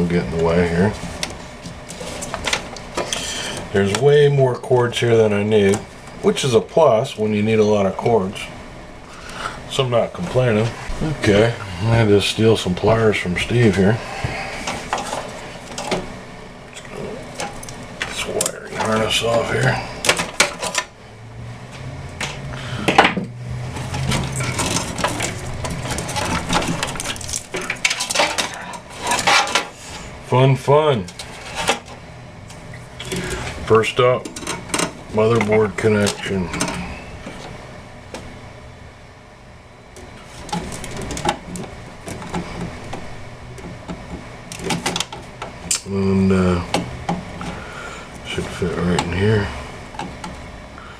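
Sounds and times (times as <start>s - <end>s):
low steady hum: 0.0s - 50.9s
cables clicking and rattling: 16.7s - 21.0s, 23.7s - 29.8s, 34.2s - 38.3s, 39.9s - 45.9s.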